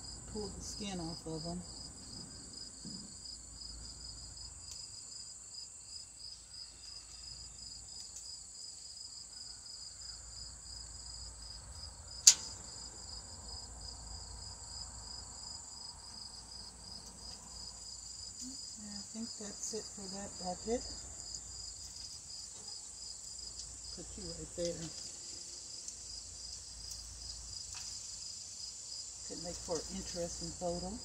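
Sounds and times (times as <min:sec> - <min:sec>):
crickets chirping: 0:00.0 - 0:31.0
sharp click: 0:12.2 - 0:12.6.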